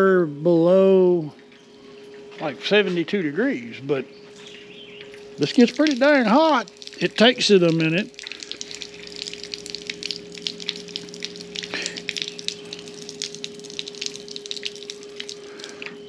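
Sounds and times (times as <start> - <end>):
electric pump humming: 0.0 - 16.0
water spraying from showerhead: 5.4 - 16.0.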